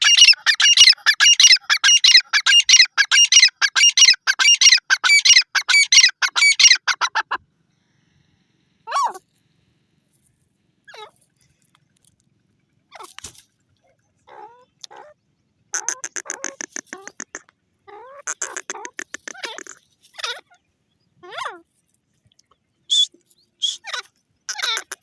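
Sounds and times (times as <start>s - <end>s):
bird calling harsh repeated notes: 0.0s - 7.4s, 15.7s - 20.4s, 22.9s - 25.0s.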